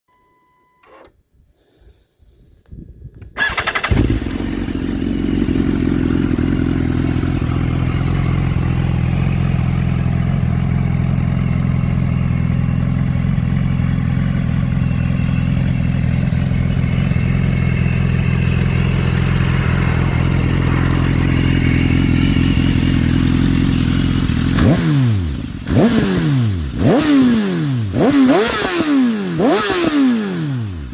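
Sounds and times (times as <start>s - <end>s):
motorcycle engine idling and revving: 3.4s - 30.9s.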